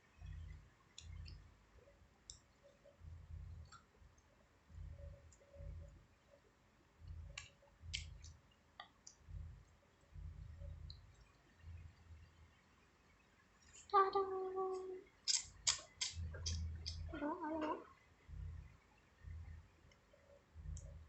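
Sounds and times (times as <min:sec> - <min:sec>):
small clicks and pops: 0:07.0 - 0:09.8, 0:14.7 - 0:17.8.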